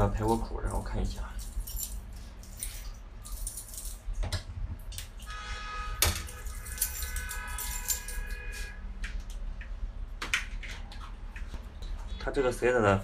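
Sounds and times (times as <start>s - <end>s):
steady high tone: 5.3s - 8.8s.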